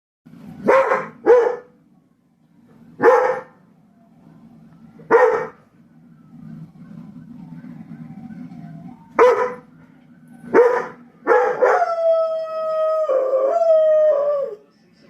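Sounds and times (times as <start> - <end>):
dog barking: 0.6 - 1.8, 3.0 - 3.6, 5.1 - 5.6, 9.2 - 9.7, 10.5 - 11.8
dog howling: 10.5 - 14.6.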